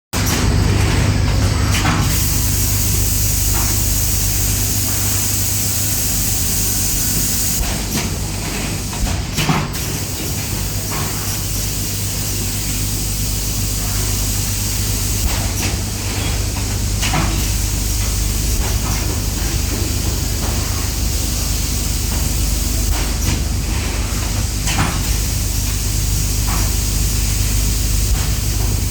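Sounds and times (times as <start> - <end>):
machine humming and hissing: 0.2 - 28.9
compressed air blasts: 2.0 - 8.0.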